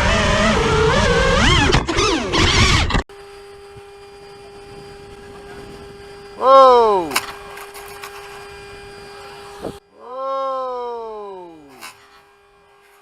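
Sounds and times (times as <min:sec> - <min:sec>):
drone motors whining: 0:00.0 - 0:13.0
steady hum: 0:03.2 - 0:12.8.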